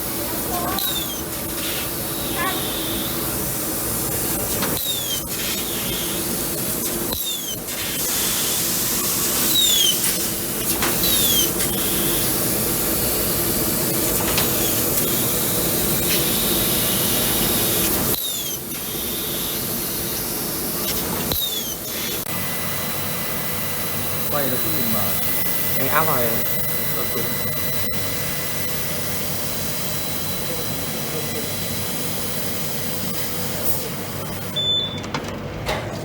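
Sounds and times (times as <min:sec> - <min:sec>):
laser cutter hissing: 0:00.0 - 0:34.6.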